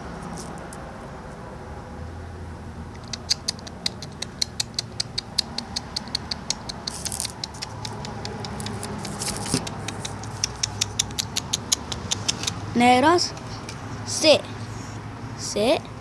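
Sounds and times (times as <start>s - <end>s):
dog making sharp clicks: 2.9s - 12.7s.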